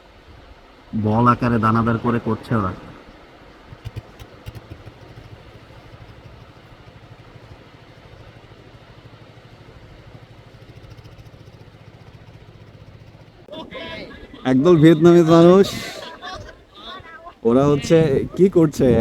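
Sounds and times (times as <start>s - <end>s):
small engine idling: 0.0s - 19.0s
sharp clicks: 3.7s - 8.4s.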